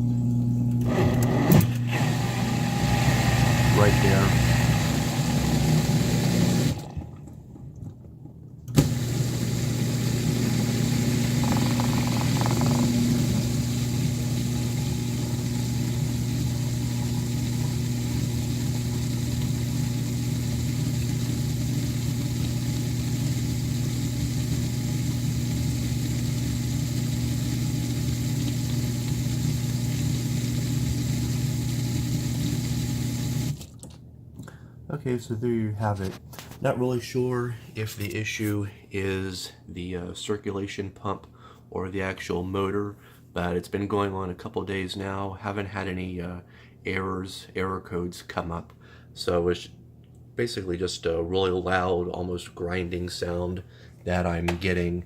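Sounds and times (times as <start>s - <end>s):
dishwasher pump grinding hum: 0.0s - 34.0s.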